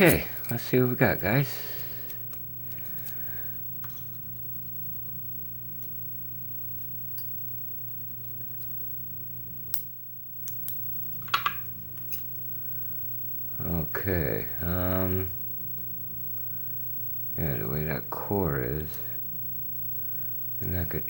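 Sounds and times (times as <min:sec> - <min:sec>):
steady low hum: 0:00.0 - 0:21.0.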